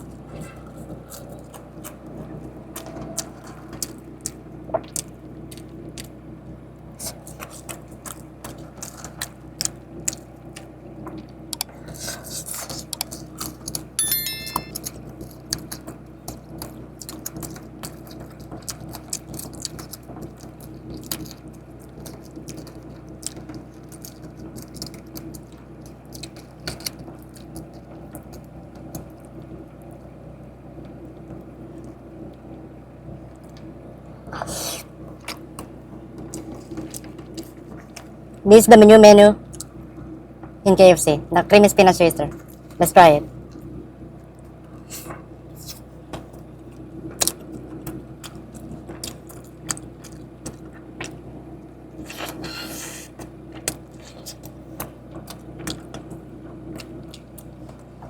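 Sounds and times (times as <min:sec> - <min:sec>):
high chime: 0:14.0 - 0:14.8.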